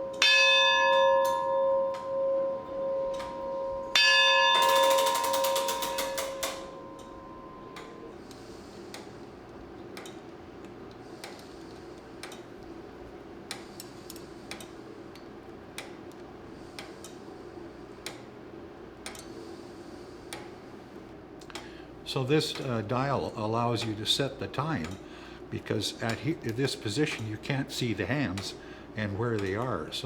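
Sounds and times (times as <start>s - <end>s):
chime bell strike: 0.2s - 8.1s
striking mechanism clatter: 4.6s - 7.1s.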